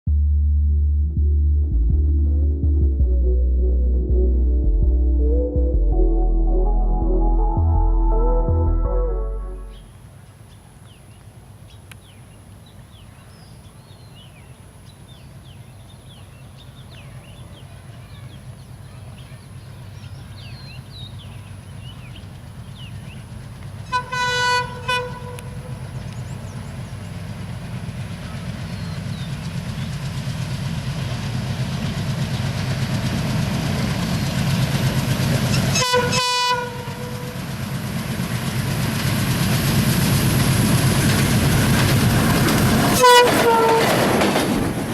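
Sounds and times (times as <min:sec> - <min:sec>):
diesel locomotive engine rumble: 0:17.0 - 0:44.9
train horn: 0:23.9 - 0:25.7, 0:35.5 - 0:37.5, 0:42.9 - 0:44.1.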